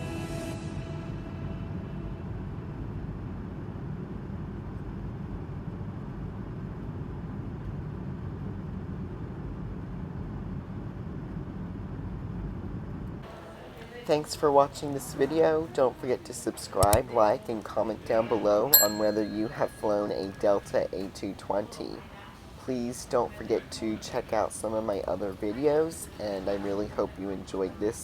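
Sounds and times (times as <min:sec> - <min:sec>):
background music: 0:00.0 - 0:02.1.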